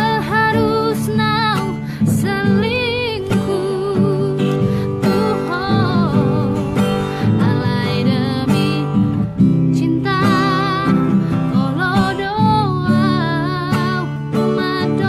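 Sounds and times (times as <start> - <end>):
strummed acoustic guitar: 0.0 - 15.0
woman singing: 0.0 - 15.0.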